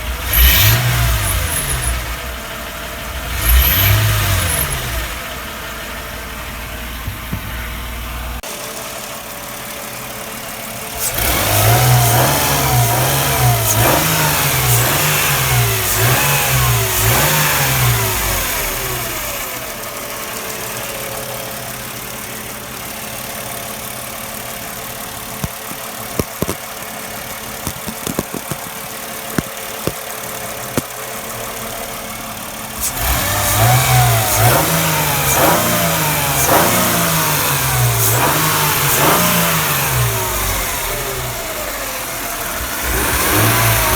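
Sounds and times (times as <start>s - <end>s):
car engine revving: 0.0s - 8.4s, 10.9s - 20.0s, 32.7s - 43.9s
sharp clicks: 25.4s - 26.8s, 27.6s - 30.0s.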